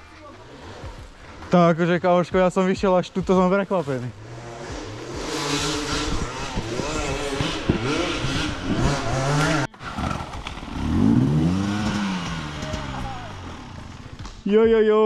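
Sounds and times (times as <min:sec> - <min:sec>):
dirt bike engine revving: 0:03.3 - 0:14.4.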